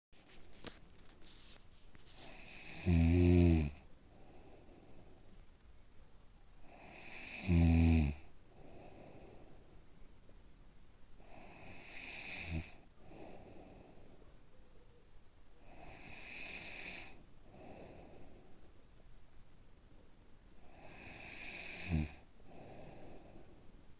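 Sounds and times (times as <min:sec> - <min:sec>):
person snoring: 0:02.4 - 0:03.8, 0:06.7 - 0:08.2, 0:11.4 - 0:12.8, 0:20.7 - 0:23.0
quiet out-breaths: 0:03.9 - 0:05.4, 0:08.5 - 0:10.0, 0:12.9 - 0:14.4, 0:15.6 - 0:18.8, 0:20.6 - 0:23.9.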